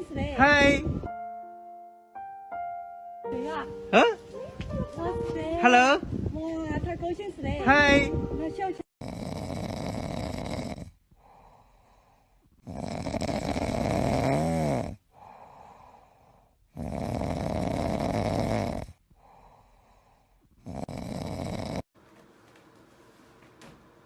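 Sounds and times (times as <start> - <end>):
animal snoring: 9.0 - 11.6, 12.6 - 15.9, 16.7 - 19.6, 20.5 - 21.9.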